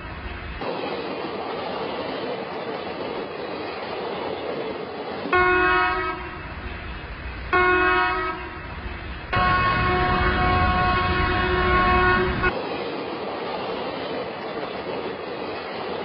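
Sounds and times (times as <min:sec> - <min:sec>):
train rumbling: 0:00.0 - 0:16.0
locomotive horn blasts: 0:05.3 - 0:06.4, 0:07.5 - 0:08.6, 0:09.3 - 0:12.6.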